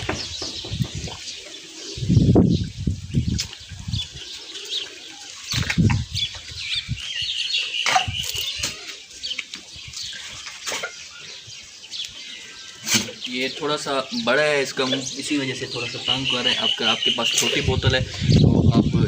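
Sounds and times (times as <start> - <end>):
small birds chirping: 0.0 - 19.0.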